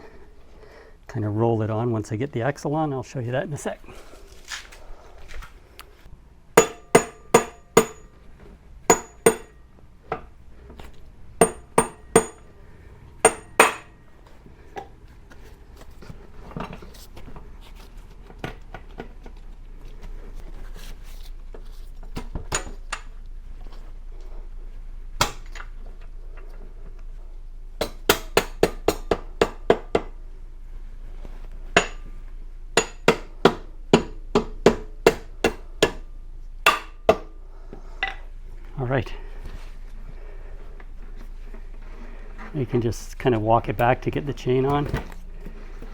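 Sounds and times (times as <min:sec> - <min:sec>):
hammer tapping metal axle: 0:06.6 - 0:08.2, 0:08.9 - 0:10.3, 0:11.4 - 0:12.6, 0:13.2 - 0:14.0, 0:27.8 - 0:30.1, 0:31.8 - 0:32.1, 0:32.8 - 0:36.1, 0:36.7 - 0:37.3.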